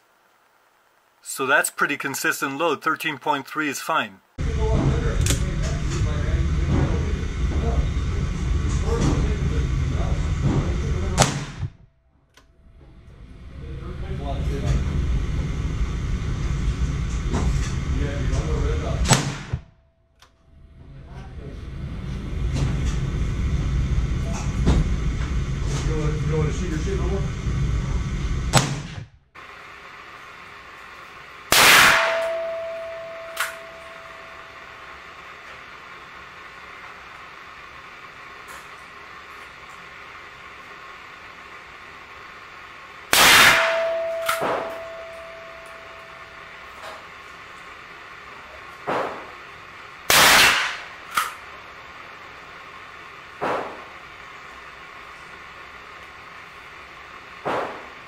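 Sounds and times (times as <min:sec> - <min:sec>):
outdoor rumble: 0:04.3 - 0:58.0
revolver gunshot crack: 0:11.2 - 0:11.7, 0:19.0 - 0:19.6, 0:31.5 - 0:33.7, 0:43.1 - 0:45.0, 0:50.1 - 0:51.4
sharp click: 0:33.3 - 0:33.9, 0:50.3 - 0:51.4.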